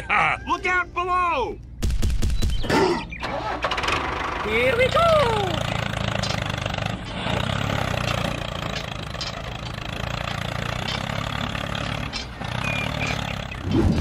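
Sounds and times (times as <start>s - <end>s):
small engine running: 3.2s - 14.0s.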